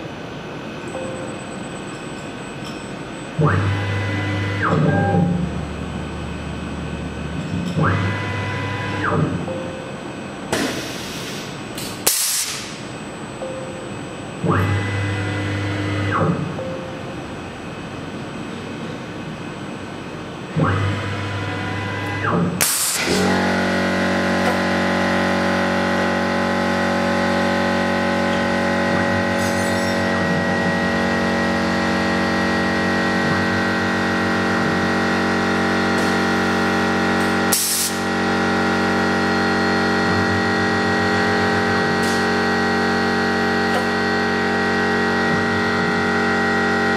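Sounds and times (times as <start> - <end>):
mill running with steady whine: 0.0 - 46.9
rhythmic motor buzzing: 3.3 - 9.6, 14.4 - 16.7, 20.7 - 46.9
loud blast of air: 10.5 - 12.8, 22.6 - 25.4, 36.0 - 38.4
short air hisses: 10.6 - 12.8.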